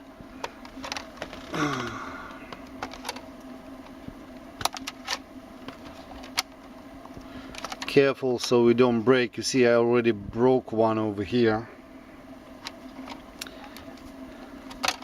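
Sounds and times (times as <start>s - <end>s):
steady low hum: 0.0s - 15.0s
short vocal sound: 1.5s - 2.4s.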